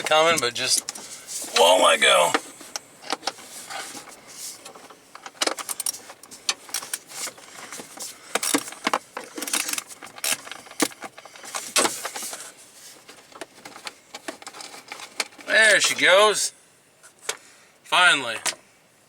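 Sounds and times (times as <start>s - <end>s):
metallic clicks and scrapes: 2.6s - 16.0s.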